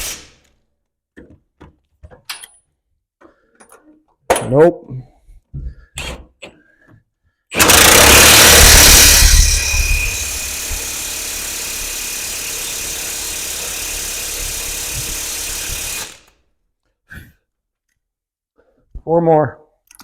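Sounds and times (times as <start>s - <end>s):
impact wrench running: 7.5s - 16.3s.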